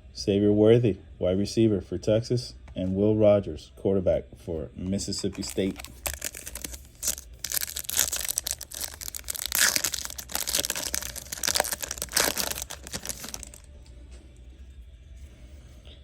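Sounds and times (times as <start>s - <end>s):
foil wrapper crinkling and tearing: 5.2s - 13.7s.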